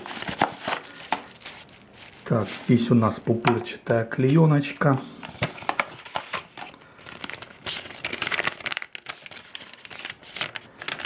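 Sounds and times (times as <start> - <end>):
bubble wrap crinkling: 0.0 - 3.2, 5.7 - 11.0.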